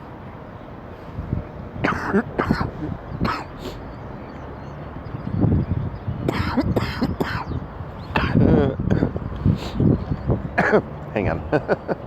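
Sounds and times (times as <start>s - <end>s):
man coughing: 1.8s - 3.6s, 10.6s - 10.9s.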